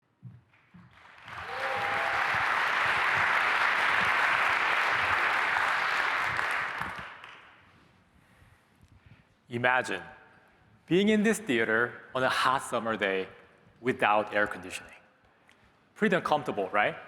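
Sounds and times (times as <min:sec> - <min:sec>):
audience clapping: 0:00.5 - 0:07.7.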